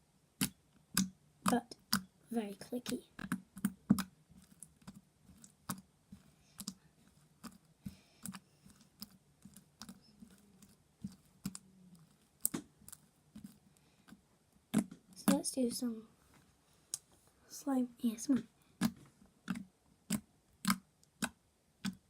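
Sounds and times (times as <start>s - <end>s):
slime clicking by hand: 0.4s - 2.1s, 2.8s - 6.8s, 7.4s - 15.5s, 18.8s - 22.0s.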